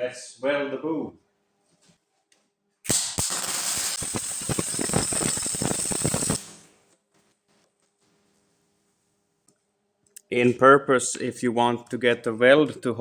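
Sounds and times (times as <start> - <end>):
welding arc crackling and hissing: 2.9 - 6.7.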